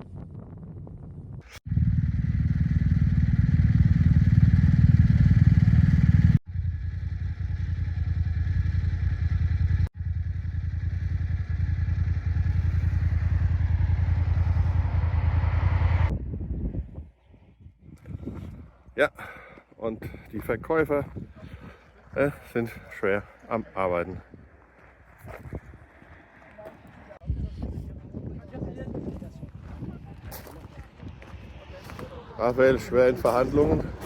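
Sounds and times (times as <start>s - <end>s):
motorcycle engine droning: 1.6s - 16.7s, 29.8s - 34.0s.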